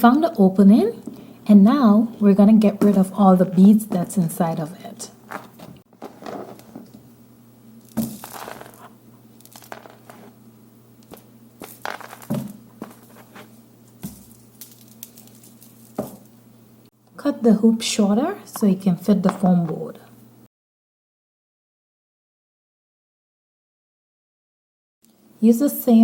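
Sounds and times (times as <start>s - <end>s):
beads rattling in plastic hoop: 7.9s - 8.8s, 9.4s - 10.3s, 14.0s - 16.3s.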